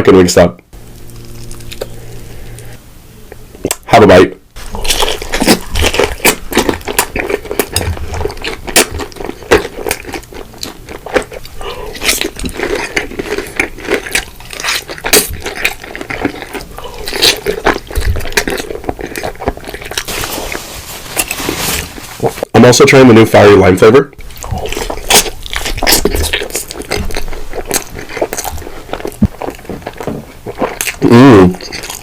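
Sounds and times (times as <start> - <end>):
chewing crispy chicken: 0.9 - 2.6, 4.6 - 20.6, 24.2 - 32.0
wet mouth sounds: 0.9 - 3.8, 24.2 - 32.0.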